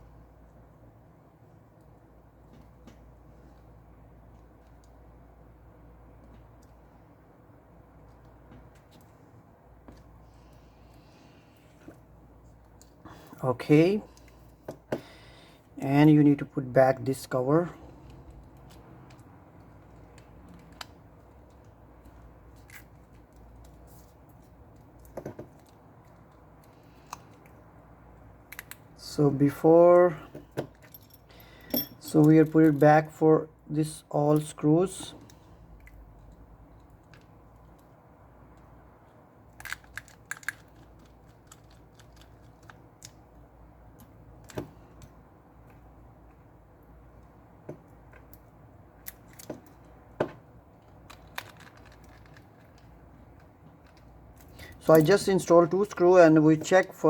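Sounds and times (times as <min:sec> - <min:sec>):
low steady hum: 0:00.0 - 0:57.0
small parts clicking and tapping: 0:18.0 - 0:27.6, 0:28.2 - 0:28.9, 0:35.2 - 0:46.4, 0:47.2 - 0:55.3.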